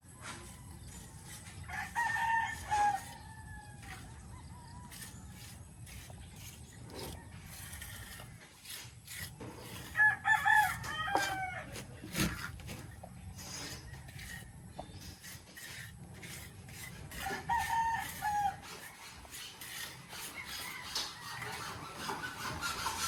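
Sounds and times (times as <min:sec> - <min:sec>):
rooster crowing: 0:01.7 - 0:05.3, 0:09.8 - 0:11.8, 0:17.2 - 0:18.6, 0:20.3 - 0:21.7.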